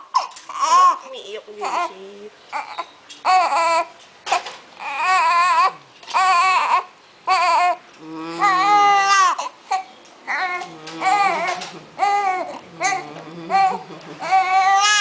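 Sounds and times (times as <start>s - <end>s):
baby crying: 2.5s - 3.9s, 4.8s - 15.0s.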